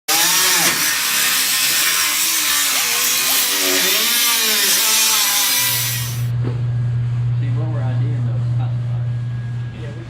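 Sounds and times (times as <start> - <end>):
power tool hissing: 0.1 - 6.3.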